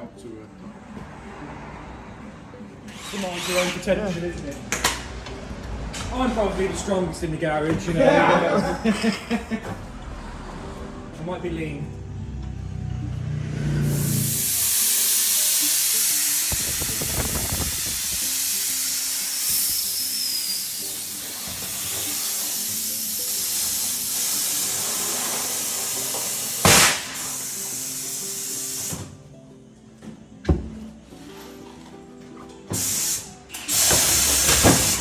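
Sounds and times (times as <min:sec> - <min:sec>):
background music: 0:00.0 - 0:35.0
compressed air hissing: 0:13.7 - 0:29.2, 0:32.7 - 0:35.0.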